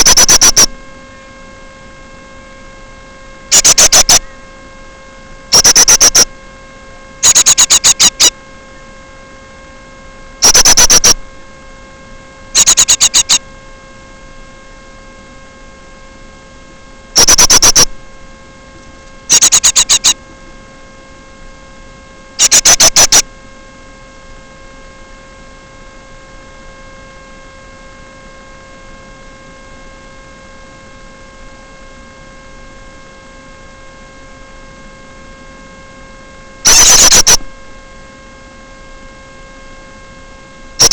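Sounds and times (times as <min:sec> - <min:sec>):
electrical hum: 0:00.0 - 0:40.9
high-pitched bird calls: 0:03.5 - 0:04.2, 0:07.2 - 0:08.3, 0:12.6 - 0:13.4, 0:19.3 - 0:20.2, 0:22.4 - 0:23.2, 0:36.7 - 0:37.4.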